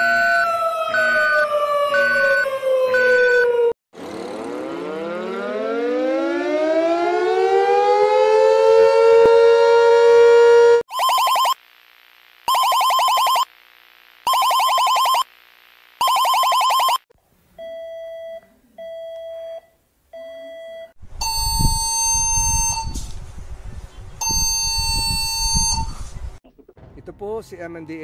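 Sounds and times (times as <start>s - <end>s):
rapidly pulsing high alarm tone: 5.0s - 11.6s, 12.4s - 13.5s, 14.2s - 15.3s, 16.0s - 17.1s
lower plain beeps: 24.2s - 25.9s.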